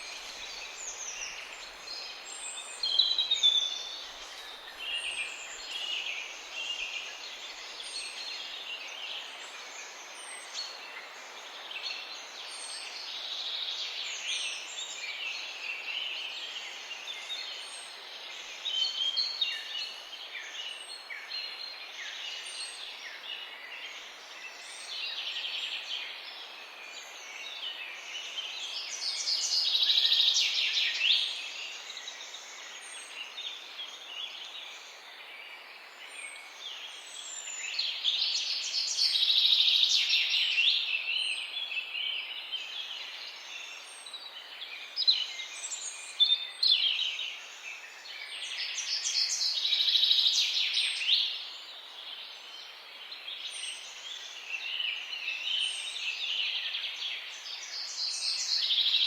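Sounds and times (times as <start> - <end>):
wild birds chirping and singing: 0.0 - 59.0.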